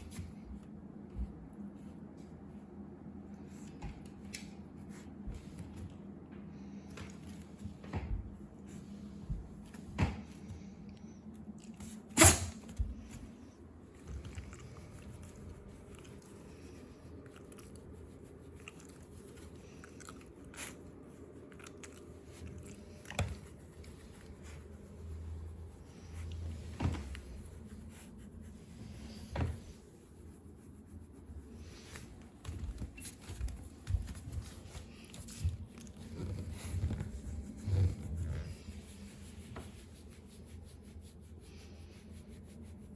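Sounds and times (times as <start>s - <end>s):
dog chewing and gnawing: 18.5s - 20.9s, 21.5s - 23.4s.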